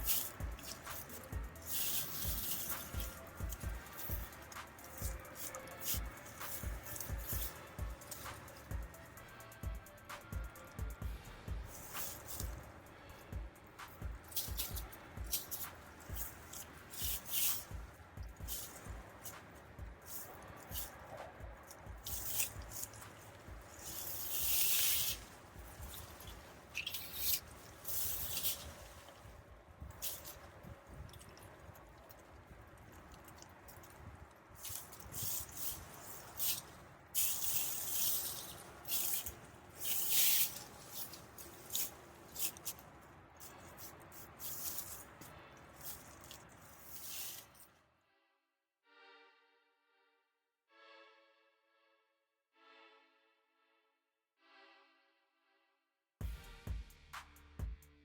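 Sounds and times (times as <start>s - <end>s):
soft low thumps: 0.0s - 5.4s, 6.0s - 26.6s
digging scrapes in soil: 0.0s - 47.7s
rush of soil: 0.0s - 47.7s.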